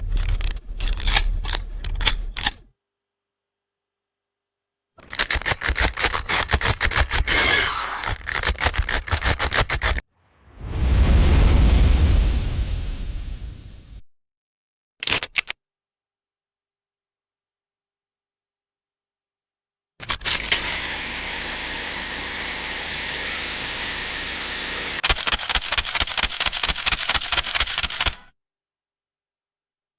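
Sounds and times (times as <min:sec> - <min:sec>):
camera shutter clicking: 0:25.0 - 0:28.2.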